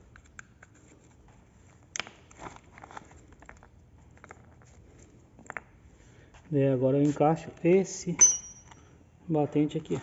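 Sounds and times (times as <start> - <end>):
small parts clicking and rustling: 0.0 - 5.8.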